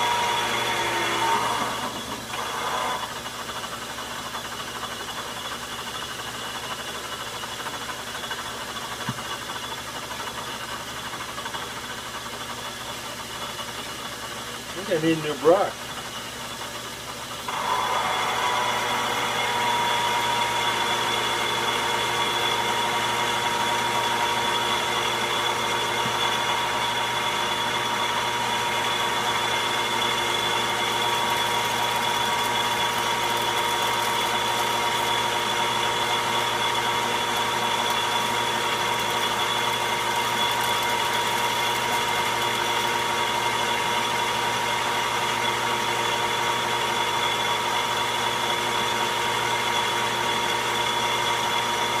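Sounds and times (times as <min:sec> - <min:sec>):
metal lathe running: 0:00.0 - 0:52.0.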